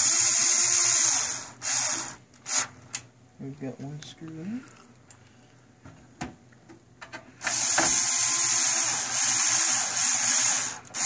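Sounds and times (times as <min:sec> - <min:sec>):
power screwdriver running: 0:00.0 - 0:02.7, 0:07.4 - 0:11.0.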